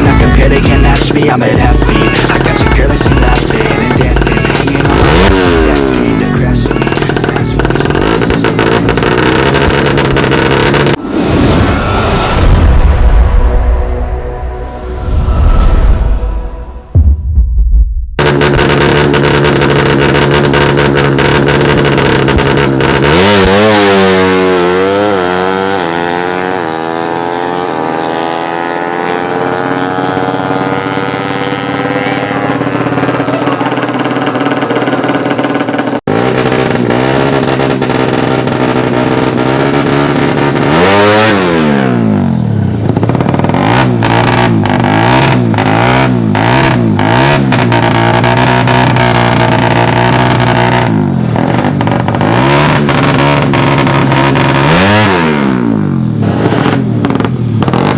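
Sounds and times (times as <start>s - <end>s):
motorcycle engine revving hard: 0.0s - 11.6s, 18.2s - 57.9s.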